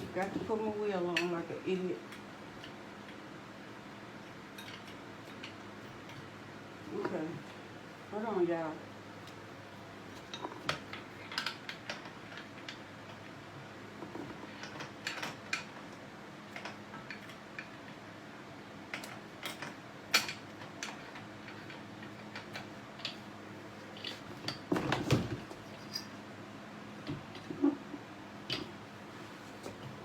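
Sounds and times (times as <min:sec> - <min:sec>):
faint steady hum: 0:00.0 - 0:30.0
parts clicking and knocking: 0:04.2 - 0:06.3, 0:10.2 - 0:18.0, 0:18.8 - 0:23.2.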